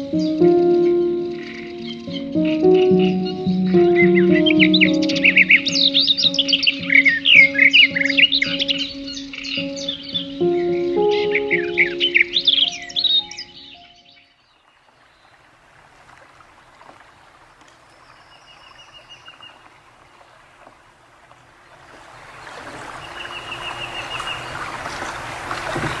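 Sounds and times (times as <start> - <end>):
bird trilling: 0.0 - 14.2, 22.9 - 25.3
bird chirps: 0.0 - 15.2, 22.8 - 26.0.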